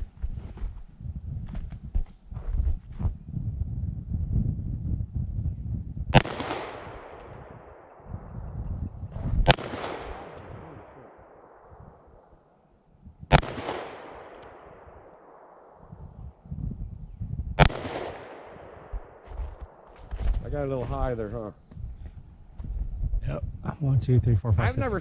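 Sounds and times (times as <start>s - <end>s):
handgun shots with echo: 6.2s - 8.0s, 9.4s - 11.7s, 13.3s - 15.7s, 17.6s - 19.9s.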